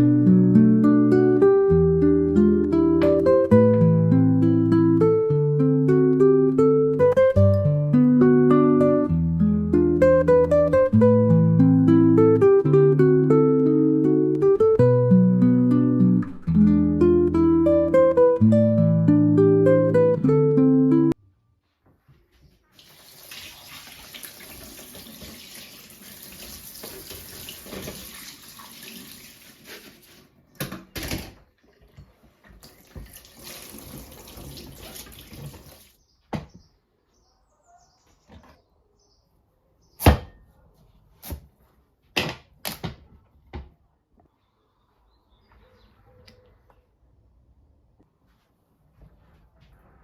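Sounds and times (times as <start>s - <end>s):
tap running into a sink: 22.8s - 30.0s, 32.5s - 35.9s.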